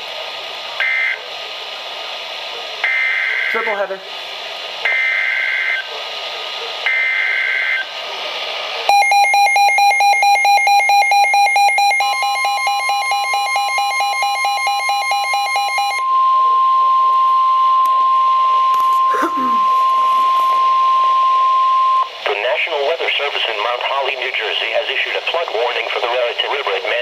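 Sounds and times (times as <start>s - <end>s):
steady warning alarm tone: 0.8s - 1.2s, 2.8s - 3.6s, 4.9s - 5.9s, 6.9s - 7.9s, 8.9s - 22.1s
rapid pulsing alarm beep: 2.9s - 3.6s, 4.9s - 5.8s, 6.9s - 7.9s, 8.9s - 17.1s.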